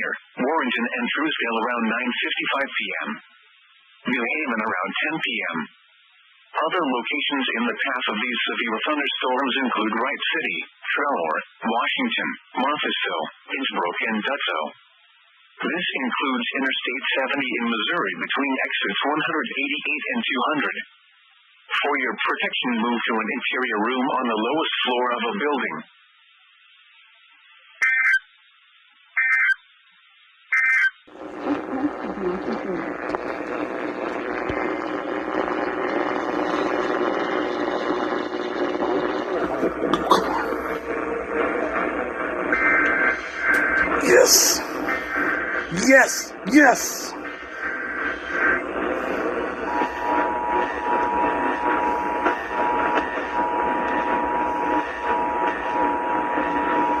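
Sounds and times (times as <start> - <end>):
broadcast programme audio: 0.0 - 3.3, 31.2 - 57.0
buzzy digital data bursts: 30.6 - 57.0.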